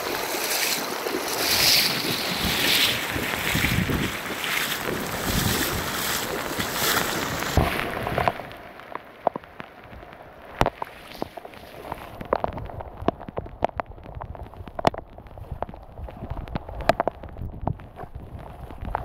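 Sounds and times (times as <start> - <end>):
wind on microphone: 0.0 - 8.7, 9.3 - 19.0
river water rushing: 0.0 - 9.2
small clicks and taps: 12.2 - 19.0.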